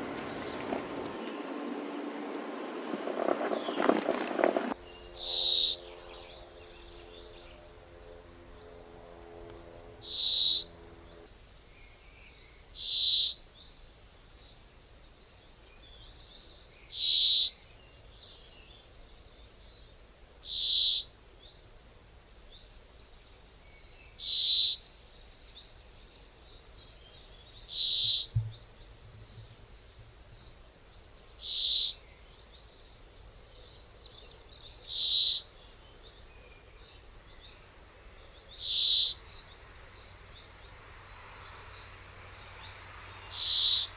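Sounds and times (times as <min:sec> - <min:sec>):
bird call note: 0:04.8 - 0:07.7, 0:09.5 - 0:10.8.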